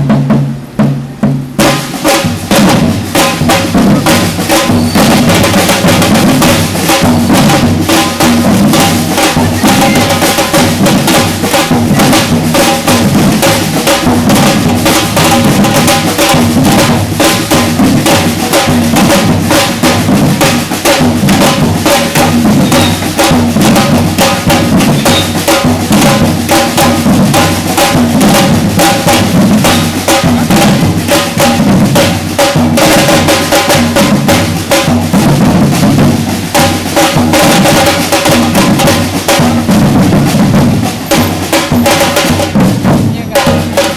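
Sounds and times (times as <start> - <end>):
deep bass drums: 0.0 - 33.1
percussion ensemble drumming: 0.0 - 43.9
snare drums: 0.0 - 43.9.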